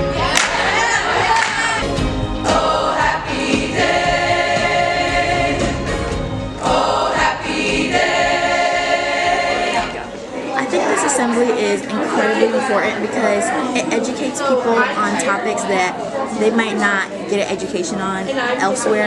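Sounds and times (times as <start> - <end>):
choir singing gospel song: 0.0 - 13.2.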